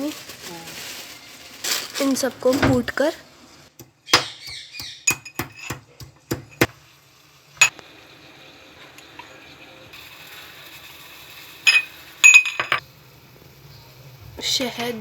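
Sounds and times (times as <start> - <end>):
pestle knocking in mortar: 3.8 - 6.7.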